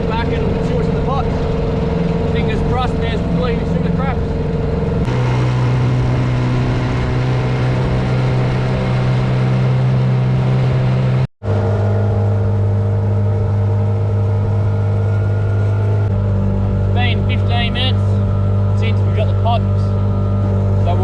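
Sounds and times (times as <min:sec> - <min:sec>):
outboard motor running: 0:00.0 - 0:21.0
water and wind rush: 0:05.0 - 0:11.0.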